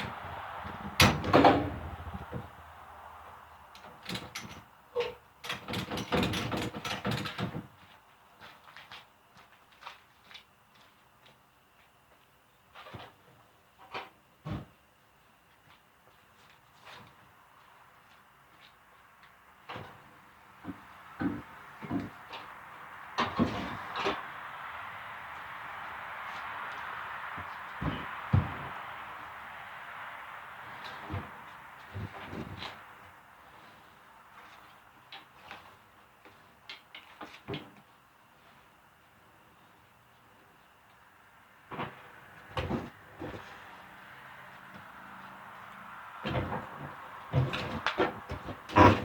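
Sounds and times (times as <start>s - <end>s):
knocks and scrapes: 12.7s - 14.8s, 19.6s - 22.5s, 23.2s - 24.4s, 26.2s - 29.0s, 30.6s - 37.9s, 41.7s - 43.8s, 46.2s - 49.0s
refrigerator knocks and thumps: 20.6s - 22.1s, 27.8s - 28.7s, 46.2s - 49.0s.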